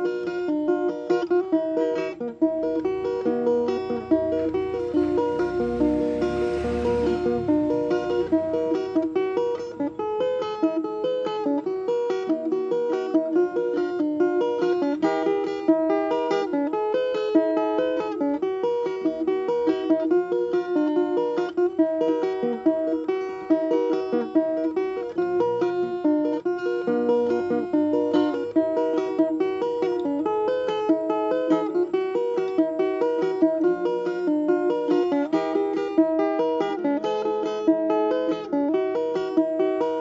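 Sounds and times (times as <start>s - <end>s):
plucked string instrument melody: 0.0s - 40.0s
low bass notes: 2.5s - 10.1s.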